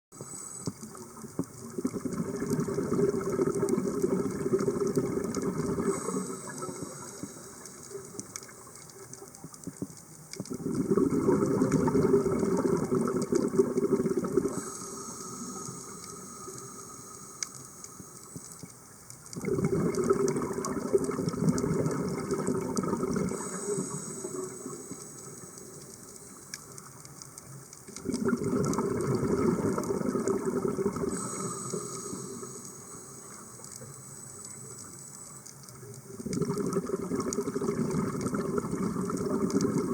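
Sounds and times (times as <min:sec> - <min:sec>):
bubbling exhalations underwater: 0:01.6 - 0:07.0, 0:10.5 - 0:14.8, 0:19.4 - 0:24.6, 0:28.0 - 0:31.5, 0:36.1 - 0:39.9
hissing regulator inhalations: 0:05.7 - 0:08.5, 0:14.4 - 0:18.8, 0:23.2 - 0:27.0, 0:31.0 - 0:35.8.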